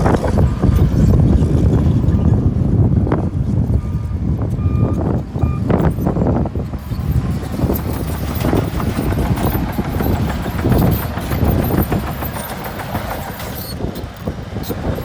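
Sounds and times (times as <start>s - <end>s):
diesel machinery rumbling: 0.0s - 15.0s
machinery clanking and rattling: 4.4s - 15.0s.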